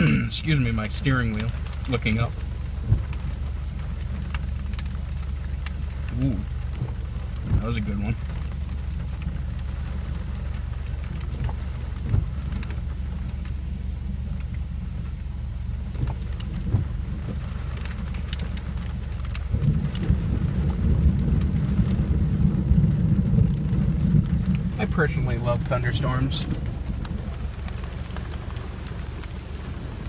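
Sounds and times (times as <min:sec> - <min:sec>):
rain on car roof: 0:00.0 - 0:30.0
thunder rumbling: 0:00.0 - 0:30.0.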